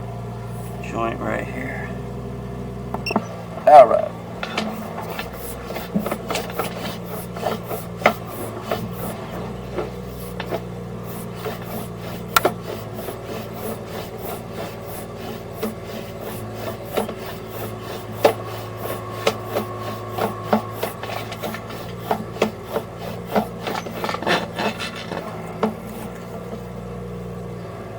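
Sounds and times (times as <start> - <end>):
cable scraping in drain: 4.4 - 26.8.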